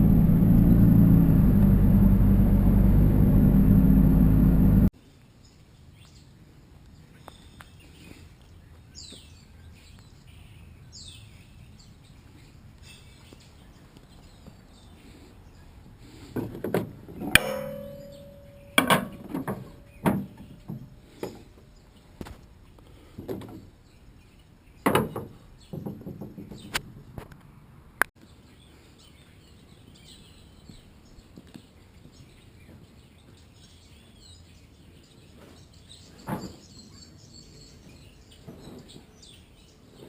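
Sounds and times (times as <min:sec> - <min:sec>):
heavy metallic thuds and clanks: 0:16.4 - 0:21.4
bird chirps: 0:17.2 - 0:22.1, 0:28.4 - 0:40.0.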